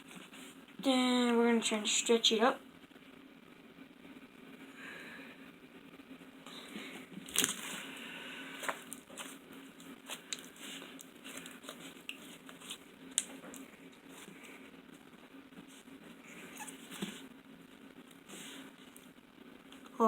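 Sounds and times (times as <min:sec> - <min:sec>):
slime crackling and popping: 0:07.2 - 0:07.9, 0:08.6 - 0:13.6.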